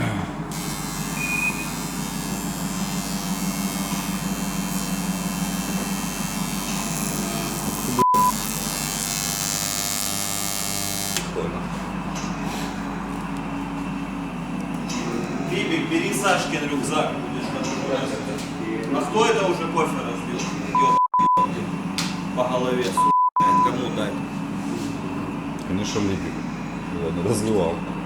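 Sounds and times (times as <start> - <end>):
electronic buzzing hum: 0.5 - 11.4
short beep: 8.0 - 8.4, 23.0 - 23.7.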